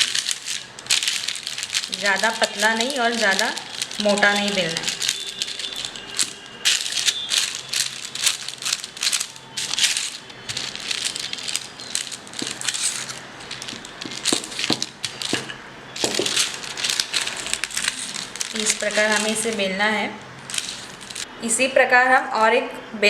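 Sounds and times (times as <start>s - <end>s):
paper crinkling under rolling pin: 0.0s - 19.7s, 20.5s - 21.3s.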